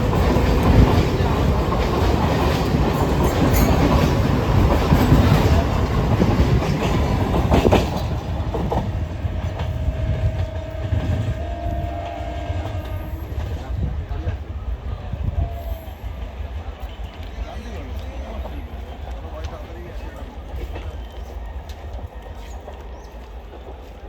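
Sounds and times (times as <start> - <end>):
train wheels clattering over rail joints: 0.0 - 11.2.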